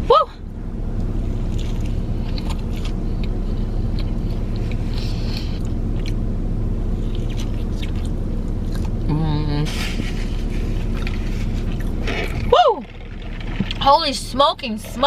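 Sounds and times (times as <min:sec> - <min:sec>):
car interior hum: 0:00.0 - 0:15.0
person chewing: 0:01.1 - 0:13.8.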